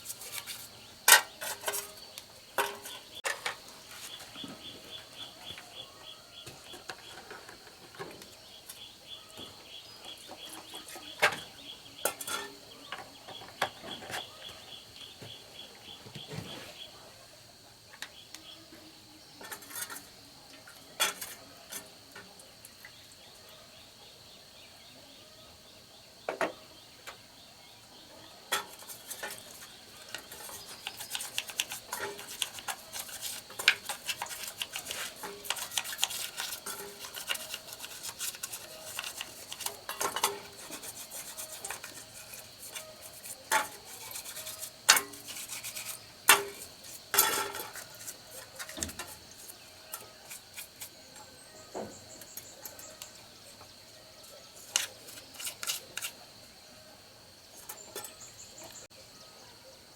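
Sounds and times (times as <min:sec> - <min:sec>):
metal rubbing and scraping: 0:28.5 - 0:53.2, 0:54.2 - 0:56.2.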